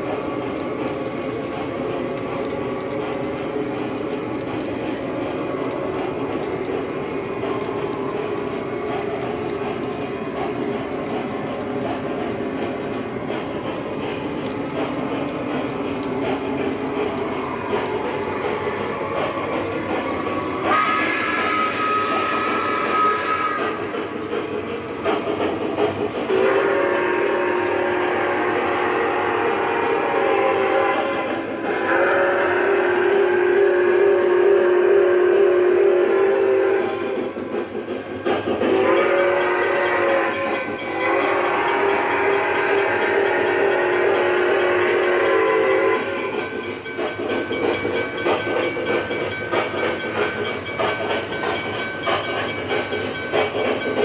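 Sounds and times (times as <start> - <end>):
model train running on track: 0.0 - 54.0
steam whistle chime blasts: 20.6 - 23.8, 38.7 - 46.4.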